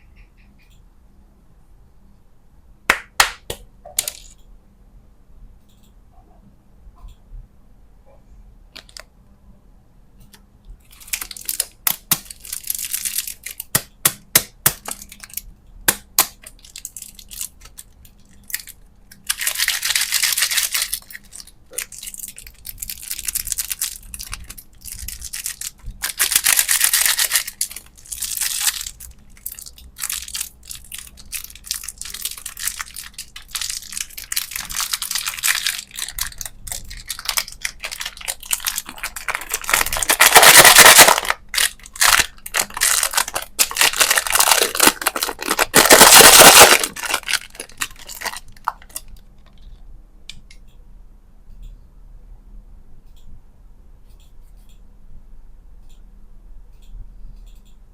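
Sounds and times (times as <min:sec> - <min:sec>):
plastic crackles and clicks: 0:02.9 - 0:04.4, 0:08.7 - 0:09.1, 0:10.2 - 0:50.6
plastic packaging crinkling and tearing: 0:10.8 - 0:49.7.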